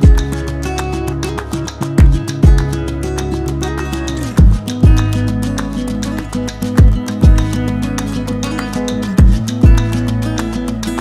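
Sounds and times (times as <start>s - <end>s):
thumping bass drum: 0.0s - 0.4s, 2.0s - 2.8s, 4.4s - 5.3s, 6.8s - 7.6s, 9.2s - 10.1s
background music with steady beat: 0.0s - 11.0s
guitar: 0.0s - 11.0s.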